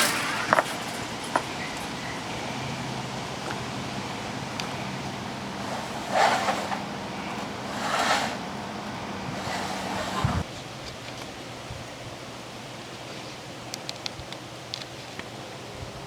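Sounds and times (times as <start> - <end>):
rushing swells: 0.0 - 10.4
vehicle engine humming: 0.0 - 10.5.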